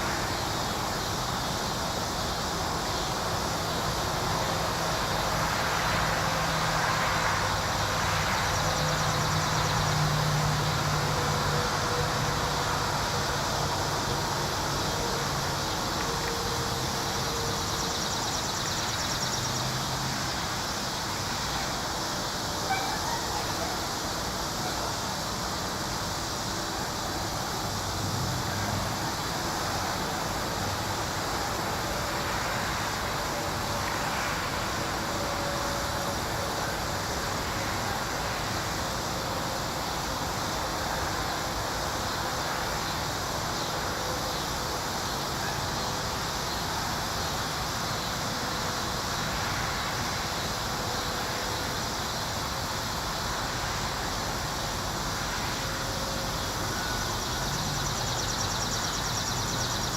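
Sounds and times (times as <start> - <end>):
even outdoor hiss: 0.0 - 59.9.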